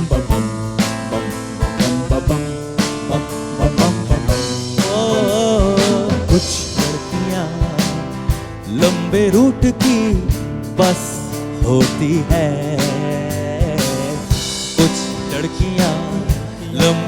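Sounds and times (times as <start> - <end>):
vibrato melody line: 0.0 - 7.8
unplugged band music: 0.0 - 17.0.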